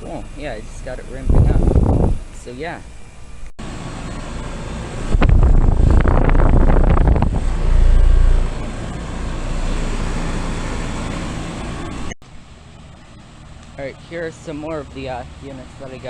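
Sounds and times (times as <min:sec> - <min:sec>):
heat pump unit whirring: 0:00.0 - 0:16.0
wind buffeting the microphone: 0:01.2 - 0:02.3, 0:05.1 - 0:08.6.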